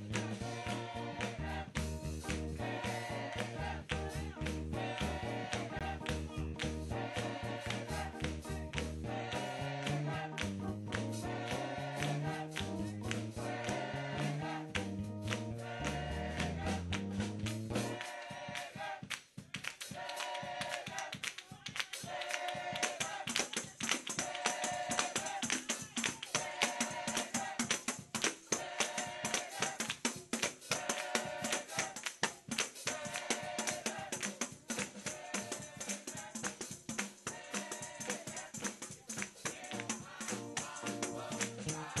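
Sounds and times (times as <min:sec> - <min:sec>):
up-tempo church music: 0:00.0 - 0:19.0, 0:22.1 - 0:25.4, 0:26.2 - 0:42.0.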